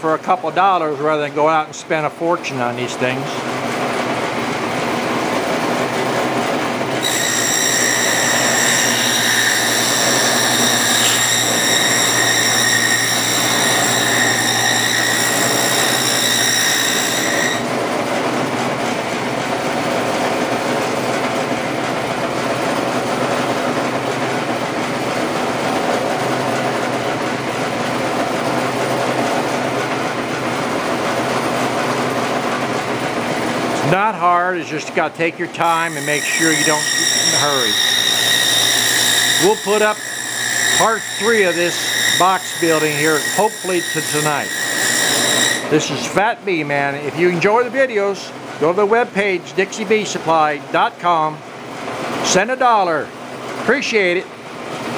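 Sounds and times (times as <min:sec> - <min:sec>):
power saw cutting wood: 0:06.9 - 0:18.0, 0:34.6 - 0:46.2.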